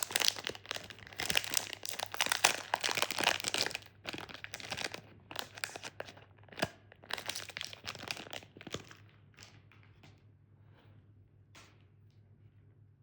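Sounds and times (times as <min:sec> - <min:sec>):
candy wrapper crinkling: 0:00.0 - 0:09.0.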